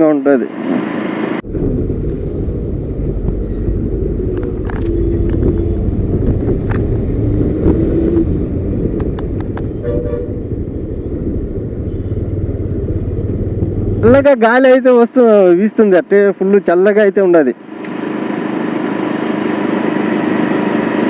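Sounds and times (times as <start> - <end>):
motorcycle engine at speed: 1.4 - 14.2
wind rushing over microphone: 1.4 - 14.3
vehicle horn: 9.8 - 10.4.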